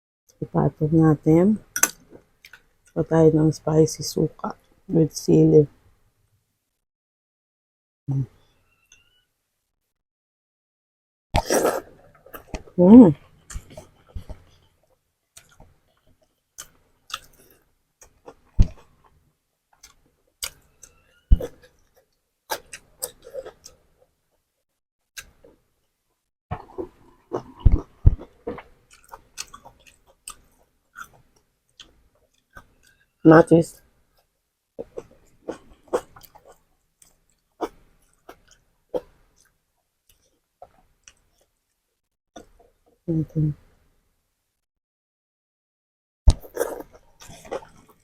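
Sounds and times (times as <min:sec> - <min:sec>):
chewing: 0:15.4 - 0:19.2, 0:26.5 - 0:33.1, 0:34.1 - 0:41.5, 0:46.3 - 0:48.0.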